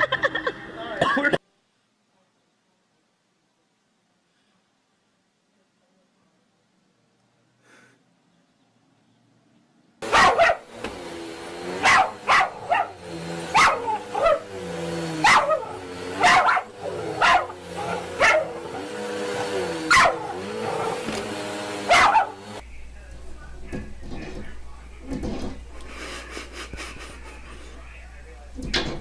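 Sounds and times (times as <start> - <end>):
dog barking: 10.0 - 10.8, 11.8 - 14.6, 15.2 - 22.6.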